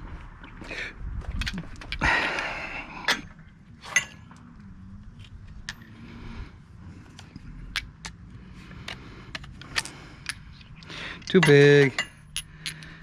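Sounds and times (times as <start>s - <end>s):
metallic clinks of hand tools: 9.6s - 13.0s.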